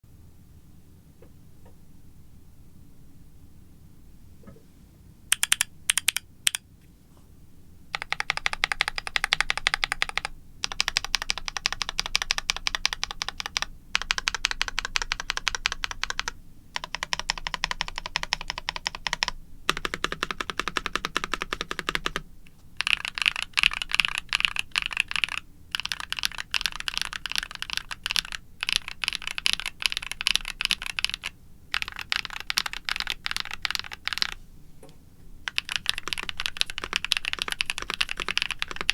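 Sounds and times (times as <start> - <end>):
mechanical keyboard typing: 5.3 - 6.6, 8.0 - 22.2, 22.8 - 34.4, 35.5 - 38.9.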